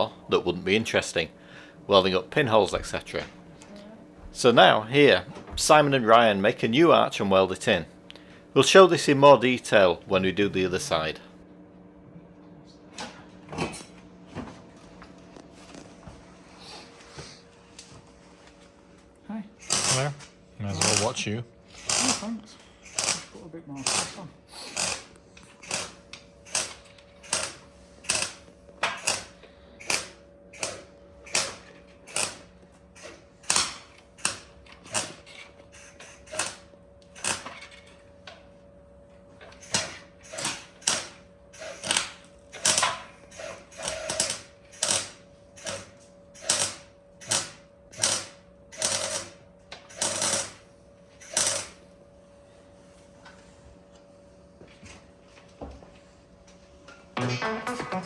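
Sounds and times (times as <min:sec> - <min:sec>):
faint steady hum: 0:00.0 - 0:13.1.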